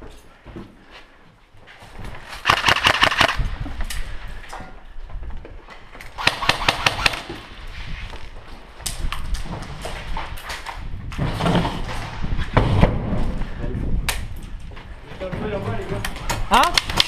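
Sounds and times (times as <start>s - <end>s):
airsoft rifle firing bursts: 2.4s - 3.4s, 6.2s - 7.4s.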